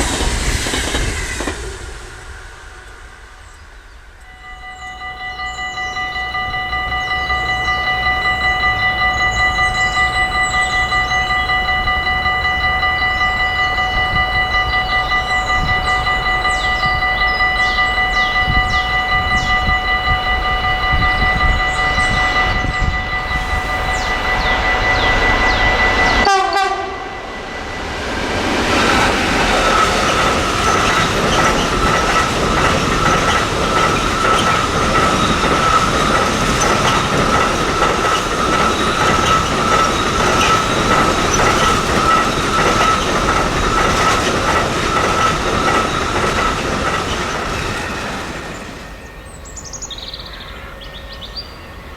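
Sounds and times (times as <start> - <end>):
train engine rumble: 0.0 - 51.9
train horn: 4.2 - 27.9
train wagons clattering: 5.6 - 51.4.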